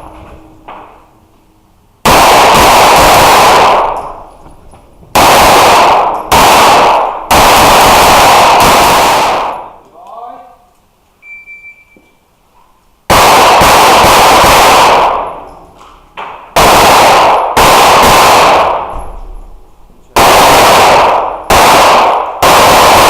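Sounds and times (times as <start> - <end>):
rapid pistol shots with echo: 2.0 - 4.3, 5.1 - 9.8, 13.1 - 15.5, 16.2 - 19.2, 20.2 - 23.0.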